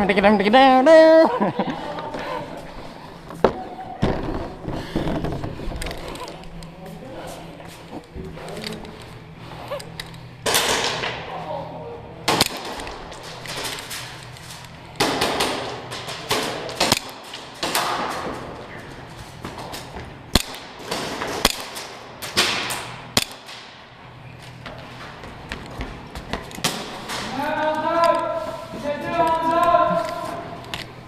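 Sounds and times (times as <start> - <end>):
airsoft pistol shots: 12.3 - 13.0, 15.0 - 18.2, 20.3 - 23.8.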